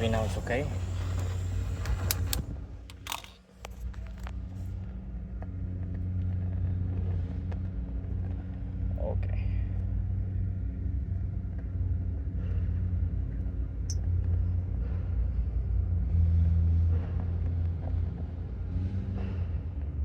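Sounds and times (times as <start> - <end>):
low machine hum: 0.0 - 3.2
faint clicks: 0.0 - 4.4.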